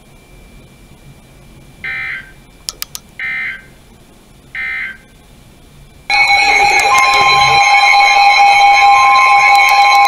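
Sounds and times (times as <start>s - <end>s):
sharp clicks: 2.7s - 3.1s
warbling digital data tones: 6.1s - 10.0s.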